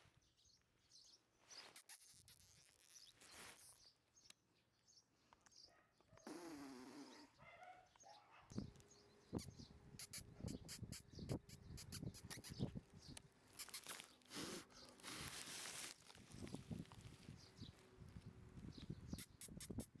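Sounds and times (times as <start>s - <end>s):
hissing rustle: 13.4s - 17.8s.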